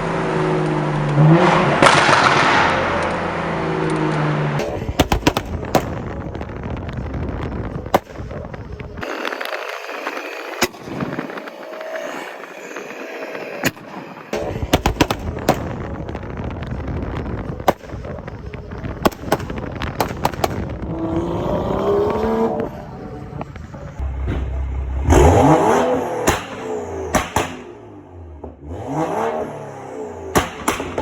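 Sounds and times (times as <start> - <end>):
car engine revving: 0.0 - 4.6, 23.9 - 31.0
exhaust crackling and popping: 0.0 - 31.0.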